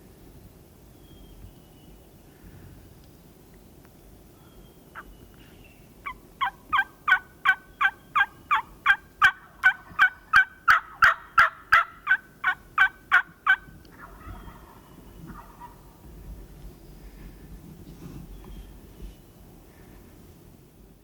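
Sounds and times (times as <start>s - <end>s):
turkey yelps: 6.0s - 15.8s.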